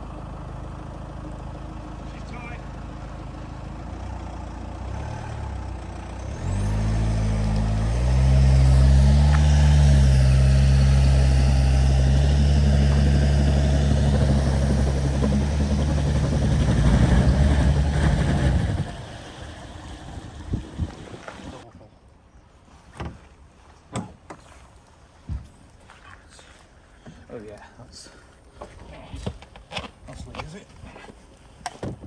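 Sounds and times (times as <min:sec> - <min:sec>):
vehicle engine droning: 0:00.0 - 0:21.6.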